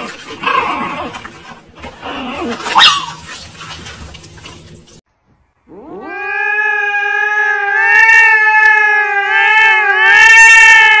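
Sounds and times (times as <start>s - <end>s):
cat yowling: 5.7s - 11.0s.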